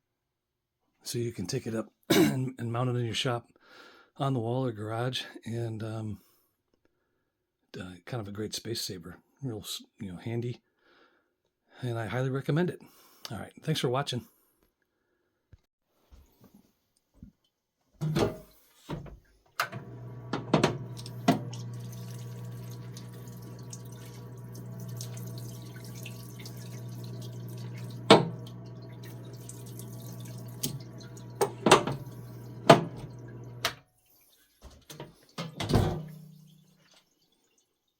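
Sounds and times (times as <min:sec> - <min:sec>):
electric pump humming: 0:19.6 - 0:33.8
liquid running and dripping: 0:19.7 - 0:37.9.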